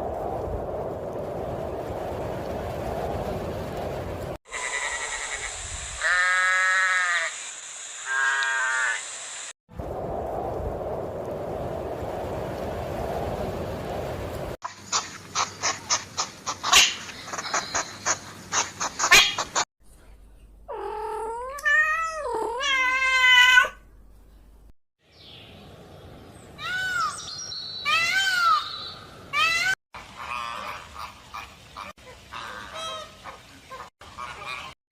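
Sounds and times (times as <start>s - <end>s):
rising and falling animal calls: 4.5s - 9.1s, 26.6s - 34.8s
sharp clicking animal calls: 14.6s - 19.6s.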